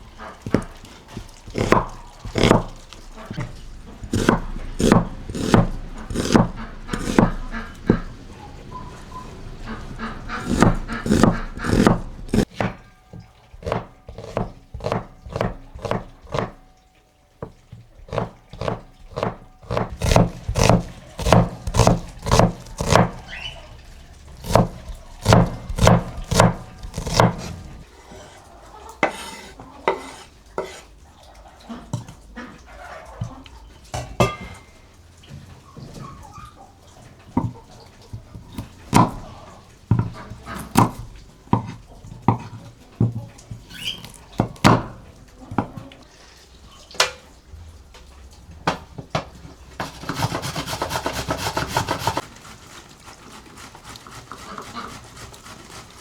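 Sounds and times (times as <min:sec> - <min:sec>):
knife chopping on cutting board: 0:00.5 - 0:08.2, 0:10.3 - 0:12.8, 0:13.6 - 0:16.6, 0:18.0 - 0:27.8, 0:38.4 - 0:39.3, 0:49.8 - 0:52.2.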